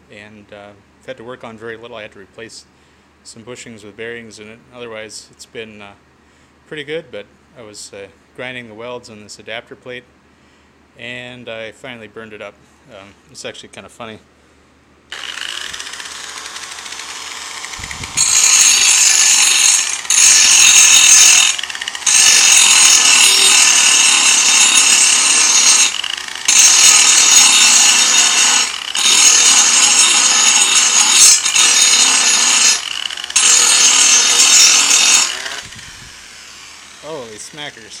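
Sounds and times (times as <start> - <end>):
angle grinder running harsh: 15.1 - 38.0.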